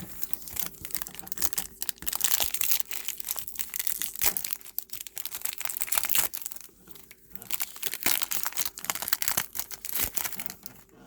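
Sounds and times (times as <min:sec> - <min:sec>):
foil wrapper crinkling and tearing: 0:00.0 - 0:10.9.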